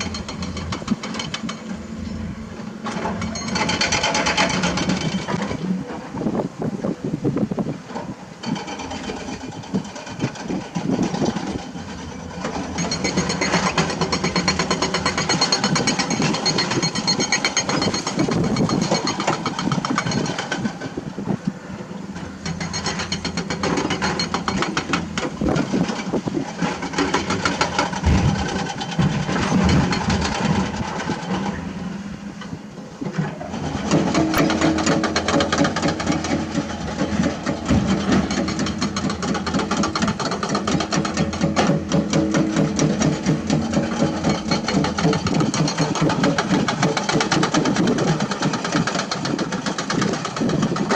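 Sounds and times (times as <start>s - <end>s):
diesel engine of earthmoving machine: 0.0s - 50.9s.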